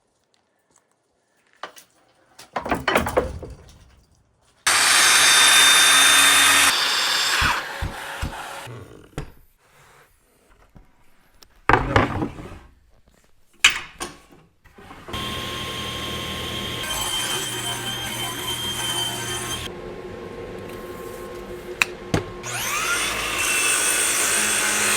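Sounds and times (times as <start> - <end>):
sawing bursts: 4.6 - 8.7, 14.8 - 19.7, 22.4 - 24.9
machine running: 4.7 - 8.7, 15.1 - 24.9
power saw running: 4.7 - 8.7, 14.8 - 24.9.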